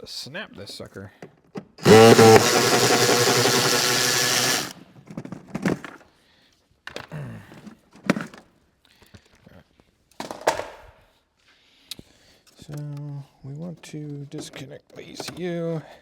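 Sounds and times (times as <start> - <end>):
cordless power tool running: 1.8 - 4.7.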